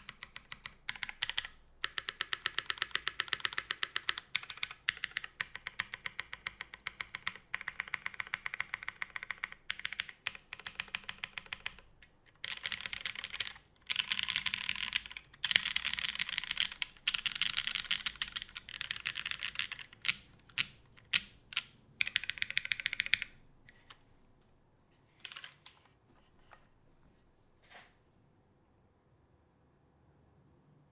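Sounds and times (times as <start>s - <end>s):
mechanical keyboard typing: 0.0s - 24.0s, 25.2s - 25.9s.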